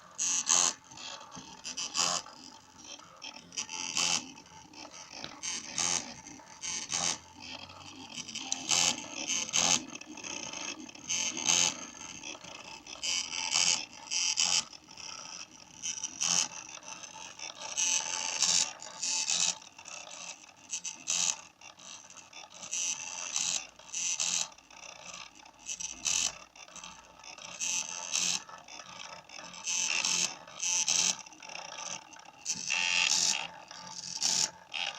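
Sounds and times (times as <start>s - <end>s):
stepper motors buzzing: 3.6s - 11.8s.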